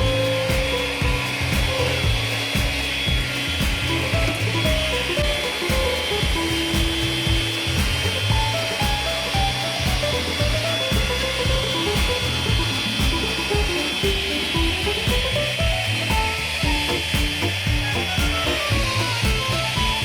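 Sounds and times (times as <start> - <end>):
background music with a beat: 0.0 - 20.0.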